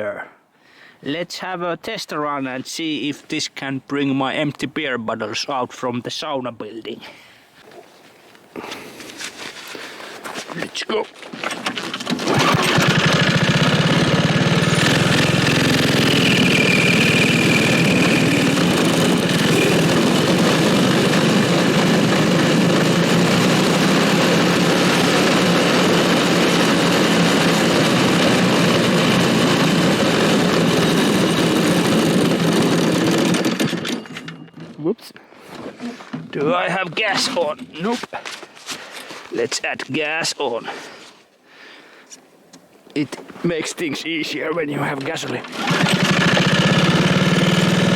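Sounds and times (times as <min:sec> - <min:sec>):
small engine running: 0:11.6 - 0:34.6, 0:45.4 - 0:47.9.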